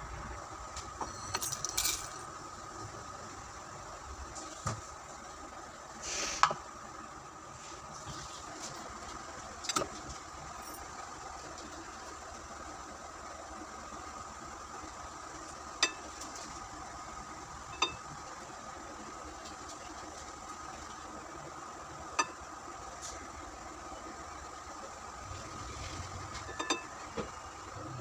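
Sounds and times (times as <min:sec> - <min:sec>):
steady background hum: 0:00.0 - 0:28.0
utensils clinking against dishes: 0:26.4 - 0:27.0.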